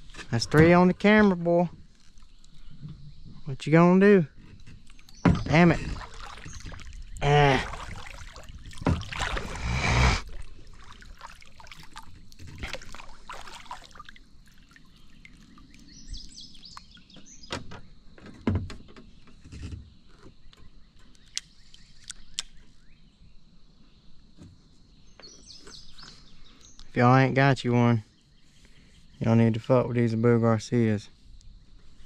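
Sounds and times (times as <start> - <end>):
bird singing: 0.0 - 7.5, 14.7 - 32.0
outdoor ambience: 0.0 - 32.0.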